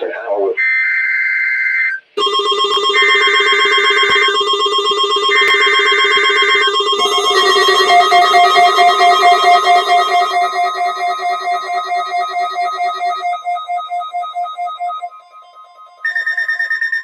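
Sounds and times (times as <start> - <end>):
buzzy digital data bursts: 2.2 - 14.7
electronic ringing alert tone: 2.2 - 17.0
pulsing high beep: 2.2 - 17.0.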